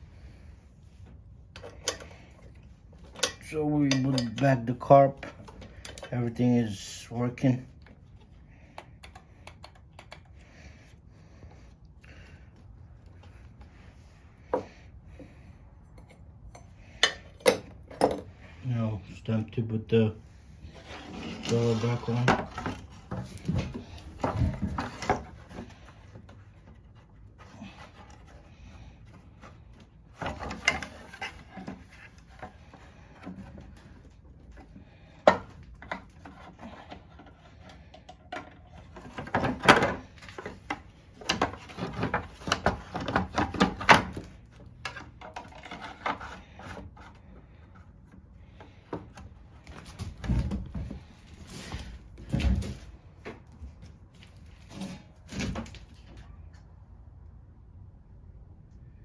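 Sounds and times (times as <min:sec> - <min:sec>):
parts clicking and rubbing: 0:00.9 - 0:06.4, 0:07.8 - 0:11.0, 0:20.6 - 0:50.3.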